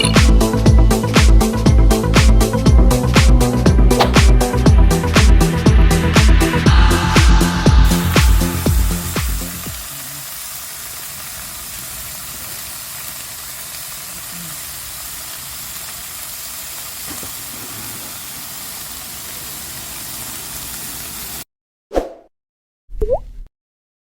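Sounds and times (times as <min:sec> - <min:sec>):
short plop-like pop: 0:04.0 - 0:04.3
steady hiss: 0:06.6 - 0:21.4.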